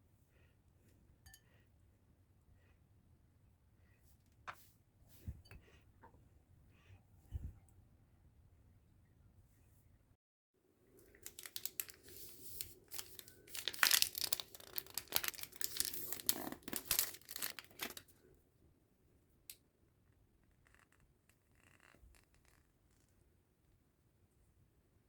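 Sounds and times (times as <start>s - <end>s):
packaging tearing and crinkling: 11.2s - 18.1s.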